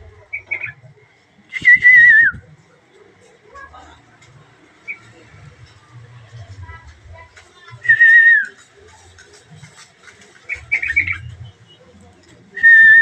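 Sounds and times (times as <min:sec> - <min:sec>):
bird chirping: 0:00.2 - 0:00.9, 0:10.4 - 0:11.9.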